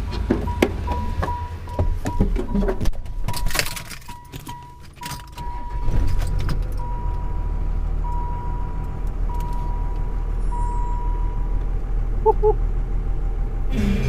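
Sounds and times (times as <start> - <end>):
car engine rumbling: 0.0 - 14.0
electronic warning chime beeping: 8.0 - 11.4.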